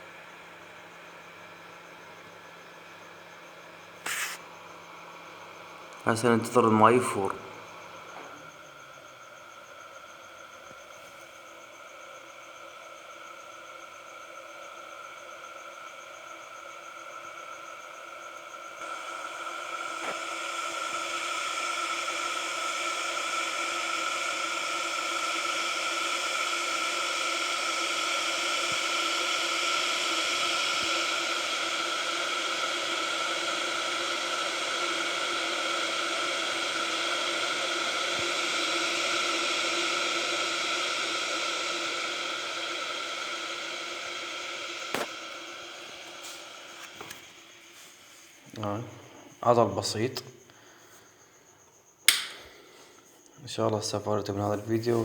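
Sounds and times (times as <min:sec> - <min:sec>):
electric kettle heating water: 0:00.0 - 0:50.8, 0:51.7 - 0:55.0
kettle switch click: 0:52.1 - 0:52.6.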